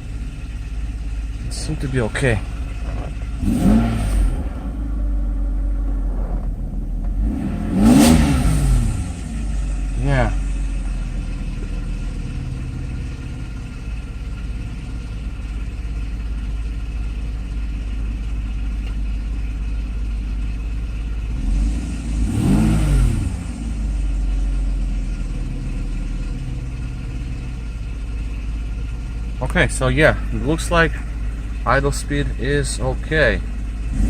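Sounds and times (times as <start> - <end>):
car engine idling: 0.0 - 34.0
engine revving: 1.4 - 13.6, 21.3 - 26.8, 31.6 - 34.0.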